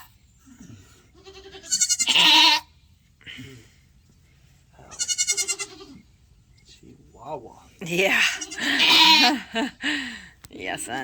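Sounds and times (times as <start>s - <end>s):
goat bleating in pain: 1.0s - 2.8s, 4.8s - 6.1s, 8.0s - 9.5s.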